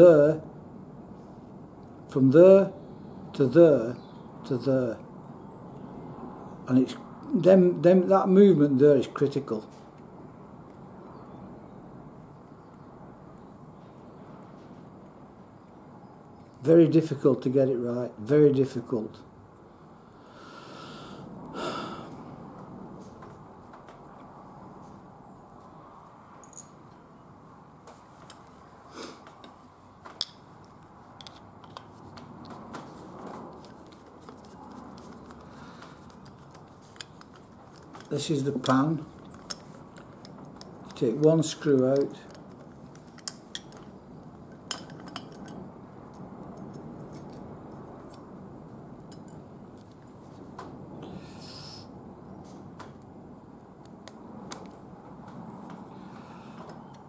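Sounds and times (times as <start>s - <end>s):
steady low hiss: 11.7s - 57.0s
light metallic clicks and taps: 36.1s - 47.5s
screwdriver metal clicks: 41.7s - 43.9s.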